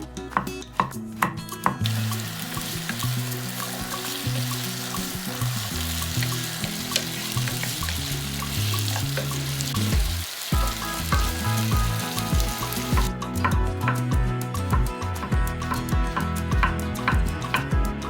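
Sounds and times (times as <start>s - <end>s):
background music with bass line: 0.0s - 18.0s
food sizzling in a pan: 1.8s - 13.2s.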